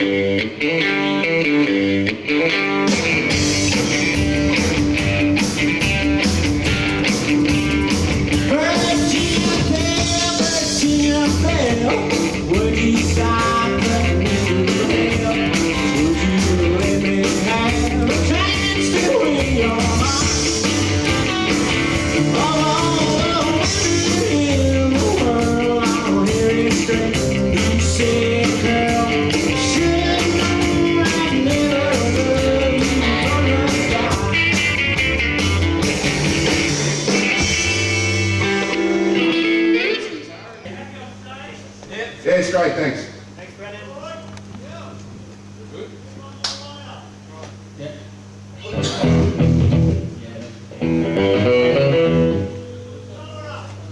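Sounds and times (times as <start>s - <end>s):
rockabilly band playing live: 0.0s - 40.3s, 48.7s - 50.1s, 50.8s - 52.8s.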